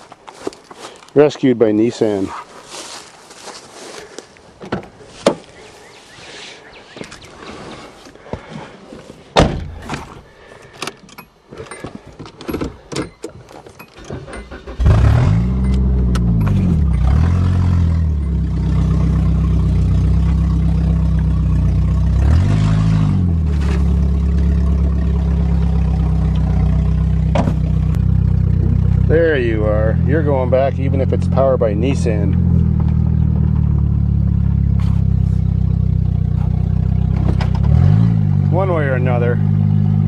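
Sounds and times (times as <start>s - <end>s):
car engine starting and revving: 14.0s - 40.0s
knocks and clattering bumps: 15.7s - 29.2s, 32.2s - 37.8s.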